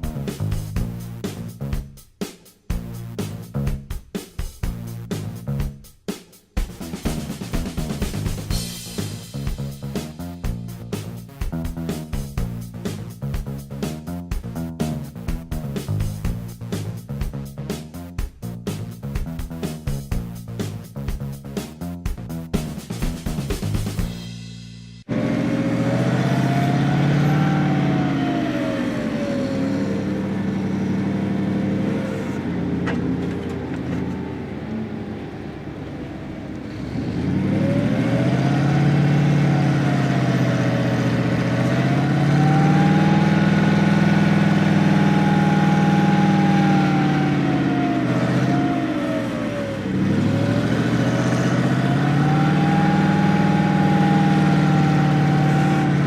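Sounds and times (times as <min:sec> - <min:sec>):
vehicle engine revving: 0:25.0 - 0:56.0.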